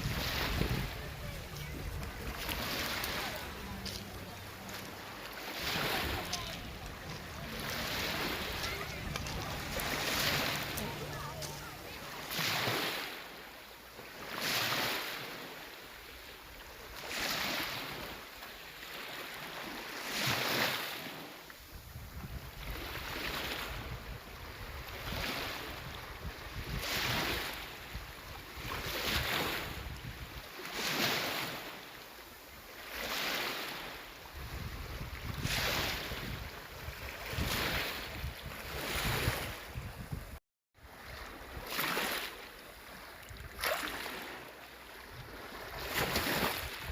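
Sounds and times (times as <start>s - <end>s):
waves washing on shore: 0.0s - 46.9s.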